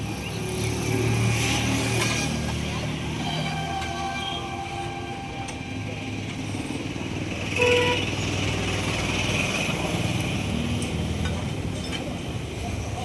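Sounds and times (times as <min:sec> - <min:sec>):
passing road traffic: 0:00.0 - 0:13.0
vehicle horn toot: 0:07.6 - 0:08.1.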